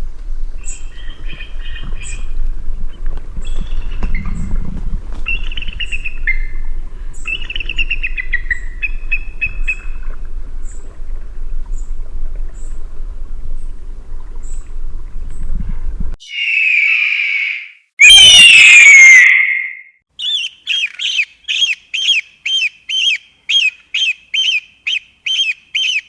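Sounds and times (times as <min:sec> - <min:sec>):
eagle calling: 0:16.2 - 0:26.0.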